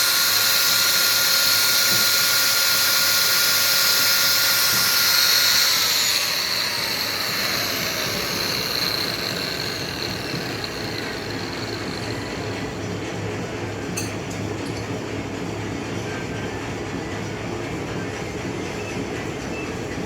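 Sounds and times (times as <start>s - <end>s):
machine whining and spinning down: 0.0s - 13.0s.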